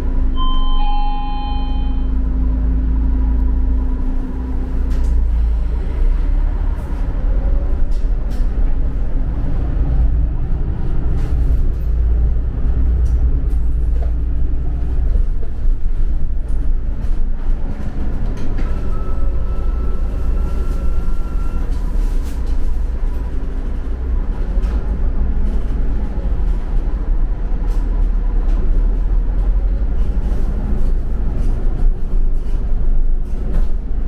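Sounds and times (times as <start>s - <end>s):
vehicle rumble inside cabin: 0.0s - 34.0s
short electronic chime: 0.4s - 2.3s.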